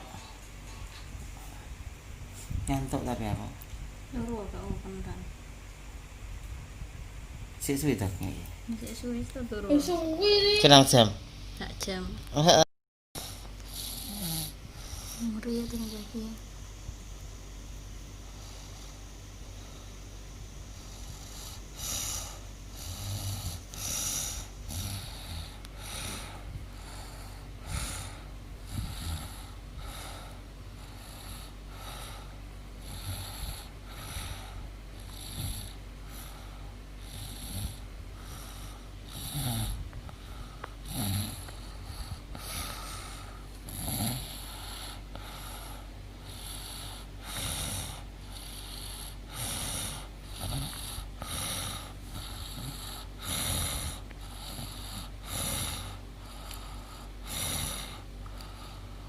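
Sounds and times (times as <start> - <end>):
woman snoring: 13.7 - 16.1, 20.8 - 39.8, 40.8 - 58.8.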